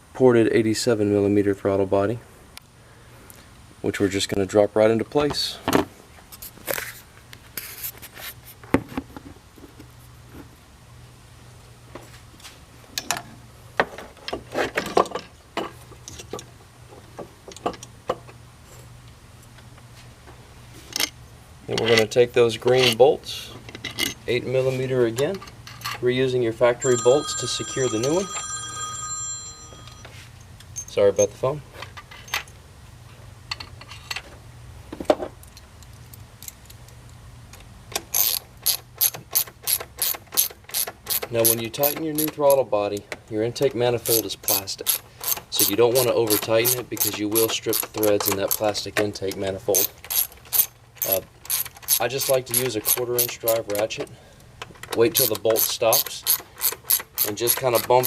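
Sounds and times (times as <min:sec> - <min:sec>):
hard parts clicking and knocking: 0:13.0 - 0:18.4, 0:37.5 - 0:43.2, 0:44.0 - 0:58.0
small metal clicks: 0:35.4 - 0:42.6, 0:44.0 - 0:48.7.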